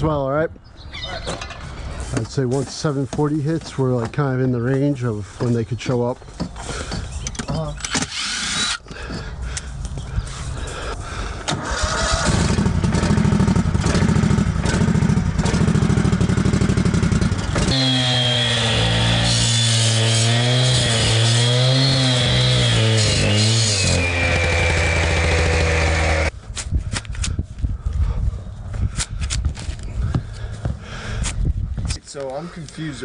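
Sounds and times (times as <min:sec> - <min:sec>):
small engine running: 0:11.7 - 0:26.3.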